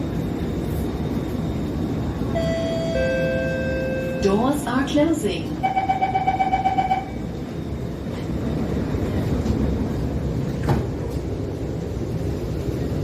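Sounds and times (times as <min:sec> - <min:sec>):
train rumble inside carriage: 0:00.0 - 0:13.0
door-closing warning beeps: 0:05.6 - 0:07.2.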